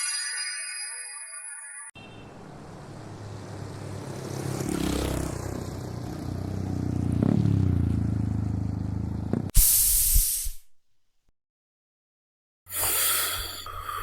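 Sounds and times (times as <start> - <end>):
engine running: 2.0 - 9.5.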